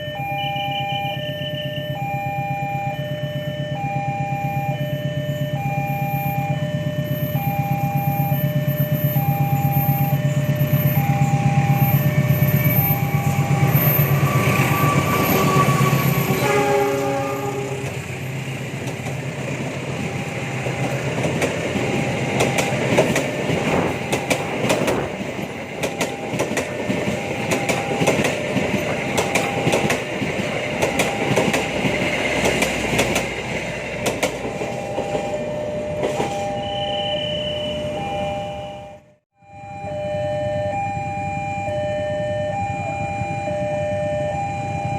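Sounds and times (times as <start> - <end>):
level crossing alarm chimes: 0.0 - 17.6, 20.0 - 23.2, 25.6 - 32.0, 34.2 - 44.9
locomotive engine running: 2.9 - 39.1
carriages clattering over rail joints: 17.9 - 36.6.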